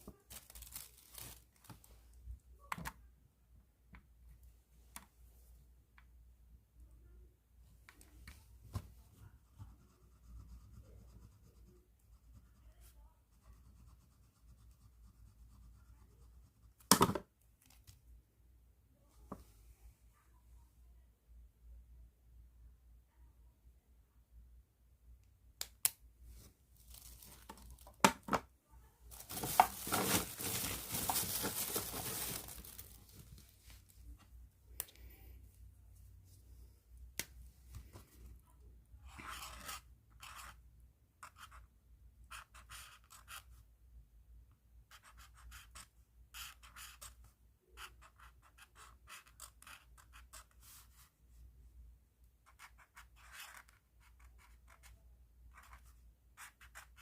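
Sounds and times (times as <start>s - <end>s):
pen scratching on paper: 39.1s - 40.6s, 41.2s - 41.7s, 42.3s - 43.6s, 44.9s - 47.2s, 47.8s - 50.9s, 52.5s - 54.9s, 55.5s - 57.0s.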